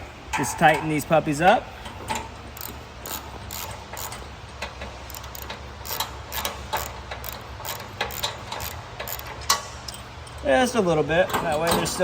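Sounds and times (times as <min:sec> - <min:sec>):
steady low hum: 0:00.0 - 0:11.5
hand ratchet clicking: 0:02.1 - 0:10.4.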